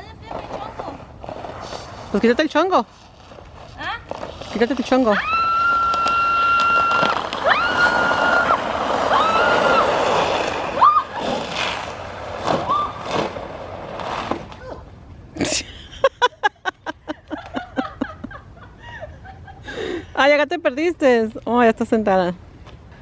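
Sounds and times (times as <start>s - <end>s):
sliding on ice hiss: 0.5s - 14.5s
woman squealing: 5.2s - 9.9s, 10.8s - 11.4s, 12.6s - 13.0s.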